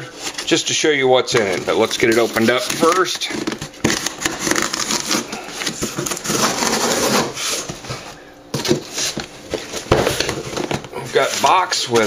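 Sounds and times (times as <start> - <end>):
cardboard box tearing: 2.4 - 7.7.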